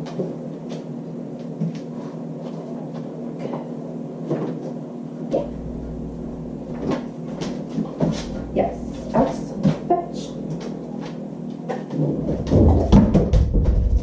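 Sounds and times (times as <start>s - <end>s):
steady low hum: 0.0s - 14.0s
deep rumble: 5.4s - 11.1s.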